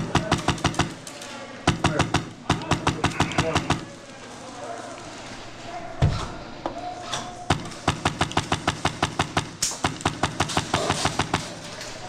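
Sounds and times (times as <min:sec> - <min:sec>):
airsoft gun rapid firing: 0:00.0 - 0:01.0, 0:01.7 - 0:03.9, 0:07.5 - 0:11.6.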